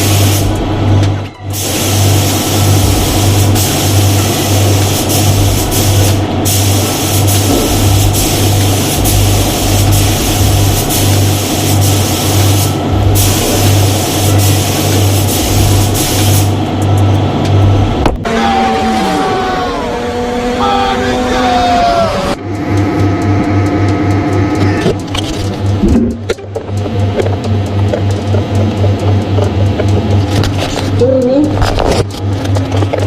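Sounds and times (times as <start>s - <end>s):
spray gun hissing: 0.0s - 0.6s, 1.5s - 16.6s
low regular throb: 0.0s - 33.0s.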